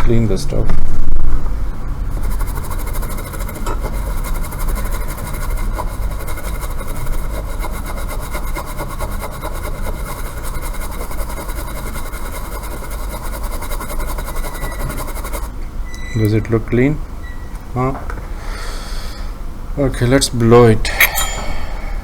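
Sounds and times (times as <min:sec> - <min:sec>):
steady low hum: 0:00.0 - 0:22.0
brush scrubbing circuit board: 0:02.1 - 0:15.6.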